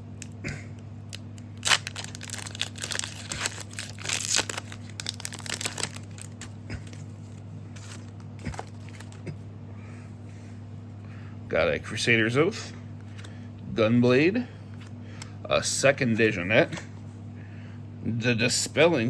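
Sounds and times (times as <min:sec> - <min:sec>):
steady low hum: 0:00.0 - 0:19.0
wrapper tearing and crinkling: 0:01.0 - 0:07.0, 0:07.8 - 0:09.2.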